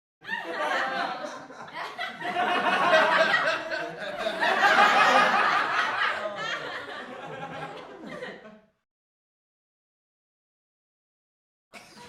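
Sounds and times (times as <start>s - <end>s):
laughter: 0.2s - 8.8s.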